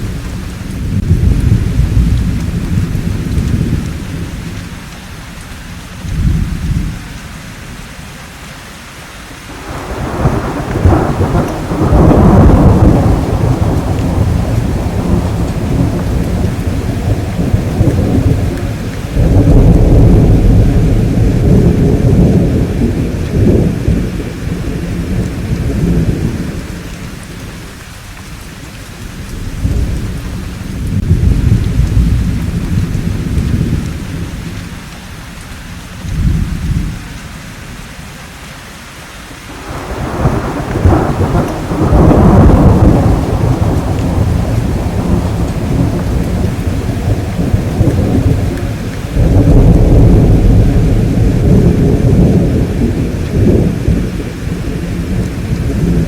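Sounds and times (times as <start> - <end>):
thunder rolling: 0.0 - 4.8, 9.5 - 34.9, 39.5 - 56.0
steady rain: 0.0 - 56.0
thunder crack: 9.5 - 27.8, 29.1 - 34.8, 39.5 - 56.0.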